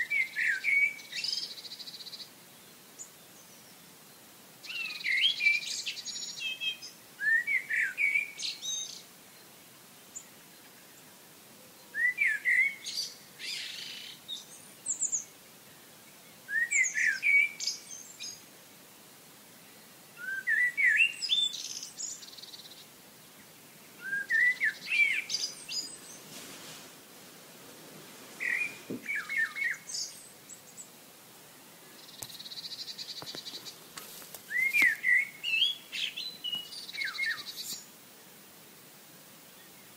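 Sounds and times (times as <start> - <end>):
songbird whistling: 4.7 - 9.0, 12.0 - 14.1, 16.5 - 18.4, 20.2 - 22.4, 24.0 - 26.1, 28.4 - 30.2, 34.5 - 37.8.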